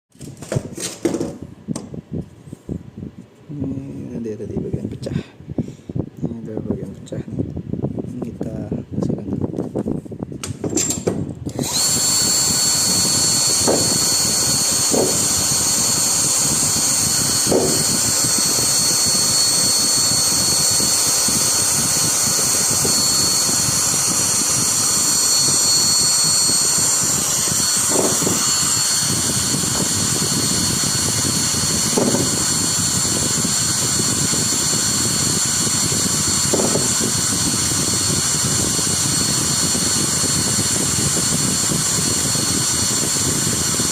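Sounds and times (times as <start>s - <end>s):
power tool whining: 10.4s - 43.9s.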